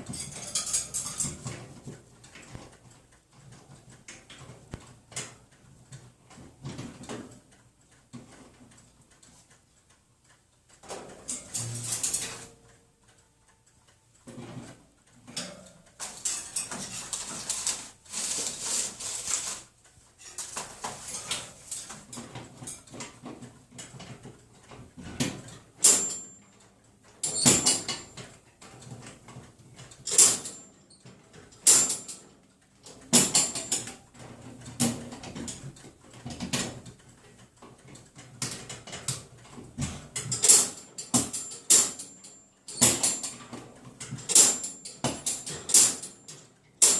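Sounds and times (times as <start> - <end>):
wire cage doors rattling: 0.0 - 1.9, 15.3 - 24.3.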